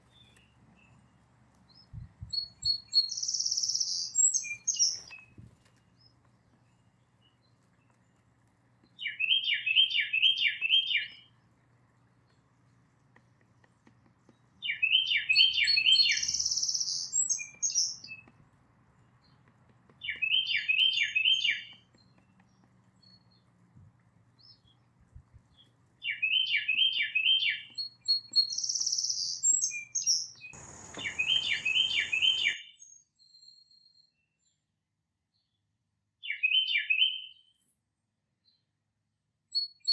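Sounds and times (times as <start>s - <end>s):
songbird singing whistled notes: 1.7s - 5.4s, 9.0s - 11.3s, 14.3s - 18.3s, 20.0s - 23.4s, 26.0s - 32.6s
short high-pitched bird calls: 30.6s - 32.6s.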